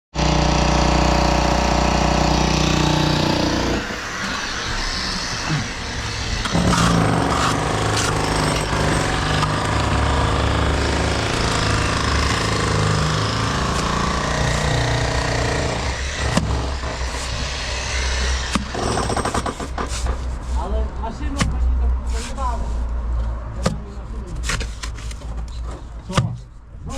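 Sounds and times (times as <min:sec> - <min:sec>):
construction machinery engine: 0:00.2 - 0:19.4.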